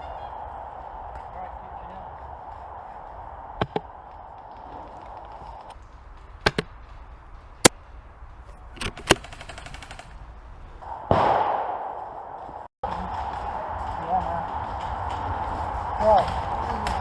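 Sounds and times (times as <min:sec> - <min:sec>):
airsoft guns firing: 0:05.8 - 0:10.8.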